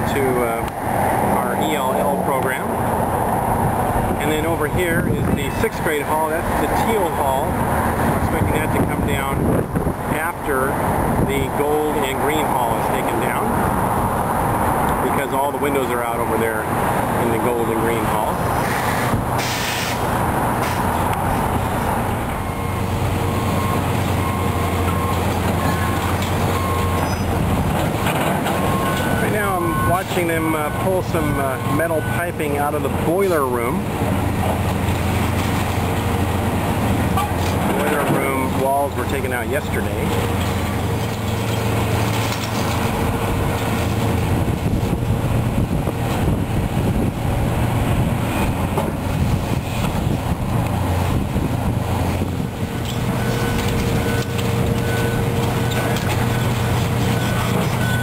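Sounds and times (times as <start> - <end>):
demolition machinery engine drone: 0.0 - 58.0
metallic squeaks: 25.1 - 29.7.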